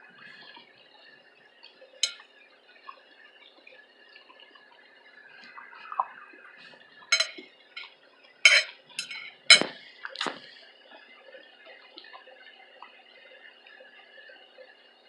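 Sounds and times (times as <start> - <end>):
cutlery clinking against a dish: 2.0 - 2.2, 7.1 - 7.4, 8.5 - 9.8.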